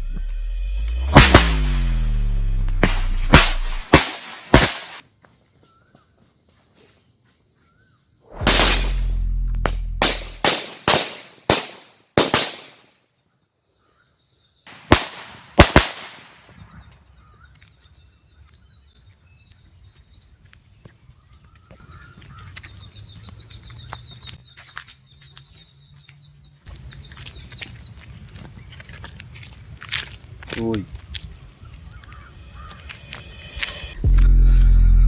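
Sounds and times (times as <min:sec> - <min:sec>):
faint low rumble: 0:00.0 - 0:03.9, 0:08.3 - 0:10.5, 0:32.1 - 0:35.0
firecrackers banging: 0:00.0 - 0:05.0, 0:08.3 - 0:12.8, 0:14.7 - 0:16.3.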